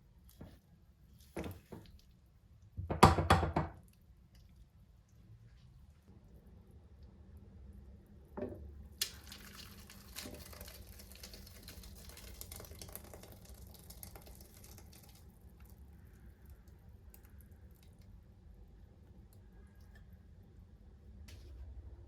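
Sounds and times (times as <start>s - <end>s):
knock: 2.8s - 3.8s
small water drips: 3.8s - 7.5s, 8.6s - 20.5s
water running and splashing: 9.0s - 15.4s.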